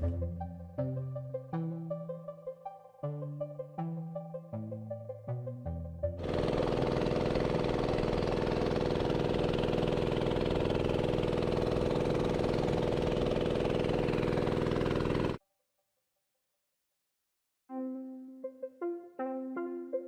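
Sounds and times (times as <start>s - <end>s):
small engine running: 6.2s - 15.4s.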